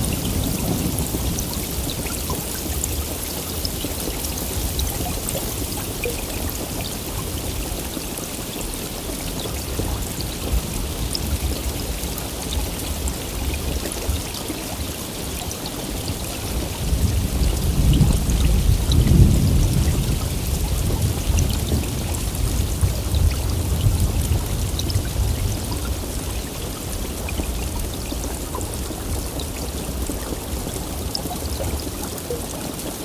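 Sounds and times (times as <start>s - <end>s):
rolling thunder: 0.0s - 7.4s, 16.6s - 31.9s
heavy rain: 0.0s - 33.0s.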